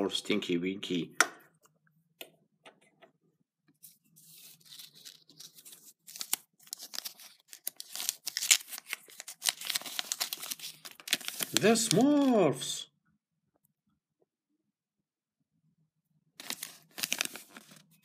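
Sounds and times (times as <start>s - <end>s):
wrapper crinkling and tearing: 4.2s - 12.3s, 16.4s - 18.0s.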